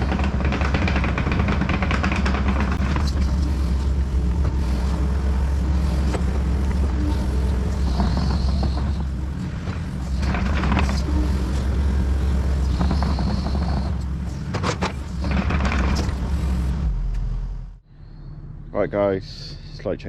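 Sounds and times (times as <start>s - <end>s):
excavator diesel engine running: 0.0s - 20.0s
high whine: 0.0s - 20.0s.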